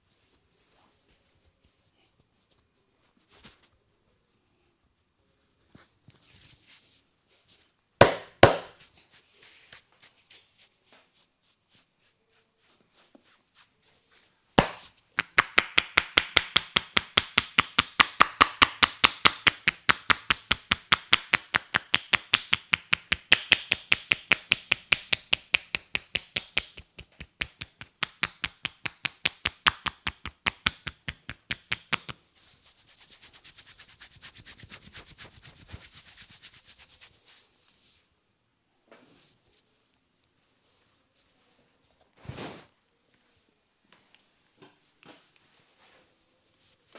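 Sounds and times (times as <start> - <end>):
hands clapping on a head: 8.0 - 8.8, 14.6 - 32.2
rubbing of hair and scalp: 8.8 - 38.1.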